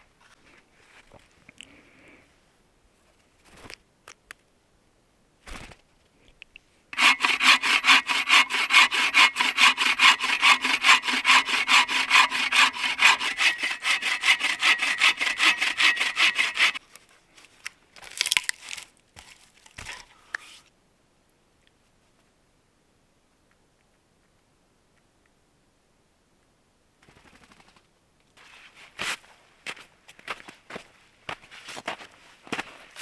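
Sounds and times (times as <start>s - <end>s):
hand saw cutting wood: 7.0s - 16.8s.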